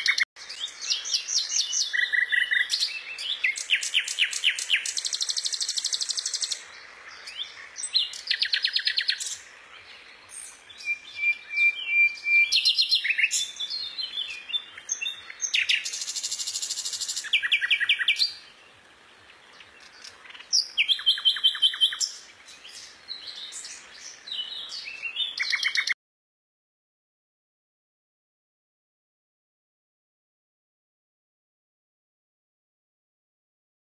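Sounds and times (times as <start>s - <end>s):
songbird singing trills: 0.0s - 26.0s.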